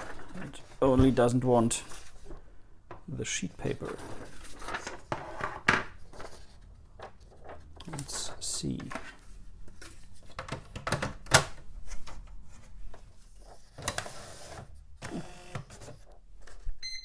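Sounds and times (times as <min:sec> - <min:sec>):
paper rustle: 0:00.0 - 0:02.4, 0:03.6 - 0:10.4, 0:11.8 - 0:14.8.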